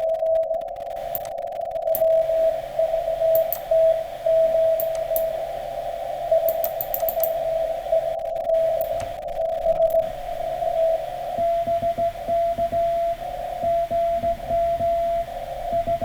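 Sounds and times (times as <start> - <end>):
radio receiver hiss: 0.0 - 16.0
static clicks: 0.0 - 16.0
morse code tone: 6.3 - 16.0.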